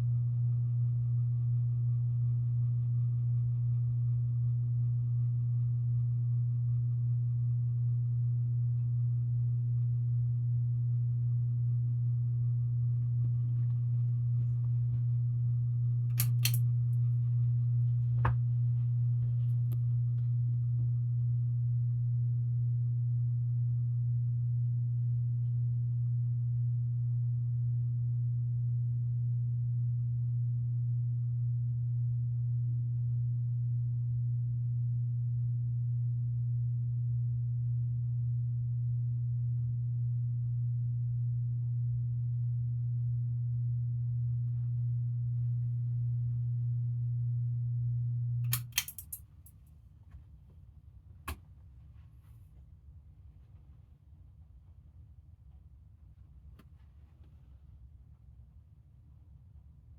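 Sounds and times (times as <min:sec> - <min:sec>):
ceiling fan motor hum: 0:07.9 - 0:22.0
sharp clicks: 0:16.1 - 0:16.6, 0:48.5 - 0:49.2.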